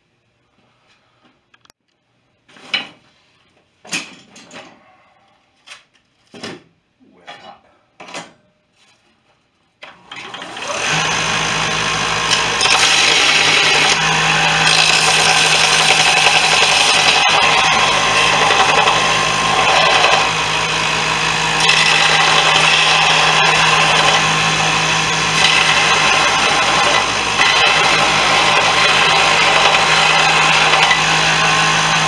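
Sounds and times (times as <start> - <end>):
power tool running: 10.0 - 32.0.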